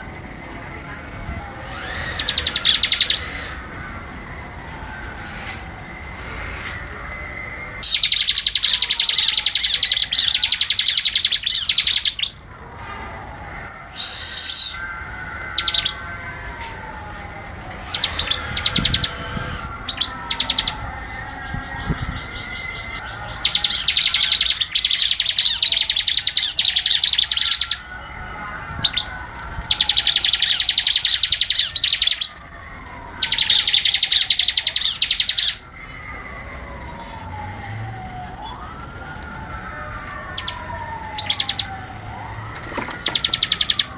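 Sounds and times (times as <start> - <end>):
bird chattering trills: 1.7 - 3.6, 7.8 - 12.4, 17.8 - 27.8, 29.7 - 32.3, 33.2 - 35.6, 41.2 - 41.8, 43.0 - 43.9
long falling whistles: 13.9 - 14.9.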